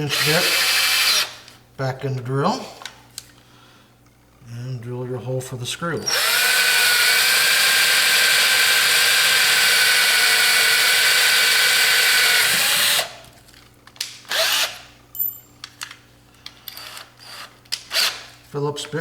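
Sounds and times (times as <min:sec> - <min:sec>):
electric drill drilling: 0:00.1 - 0:01.4, 0:06.1 - 0:13.2, 0:14.3 - 0:14.8, 0:16.8 - 0:18.2.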